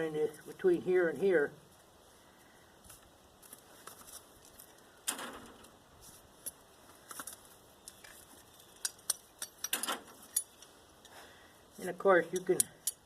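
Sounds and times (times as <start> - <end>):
metallic clinks and scrapes: 6.0 - 11.2, 12.2 - 13.0.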